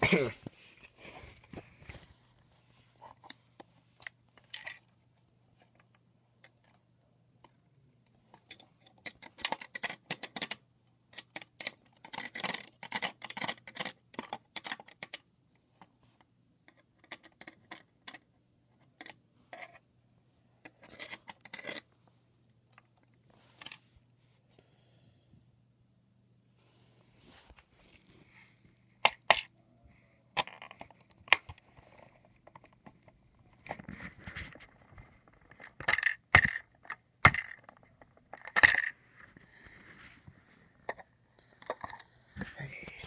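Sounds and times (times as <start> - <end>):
clicks and scratches on plastic: 7.4 - 19.8.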